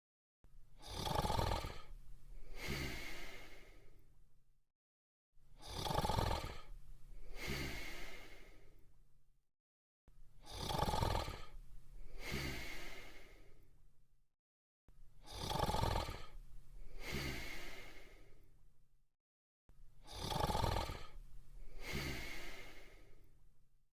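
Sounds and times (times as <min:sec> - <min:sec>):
cartoon snoring: 0:00.8 - 0:03.9, 0:05.6 - 0:08.7, 0:10.4 - 0:13.5, 0:15.2 - 0:18.4, 0:20.0 - 0:23.2.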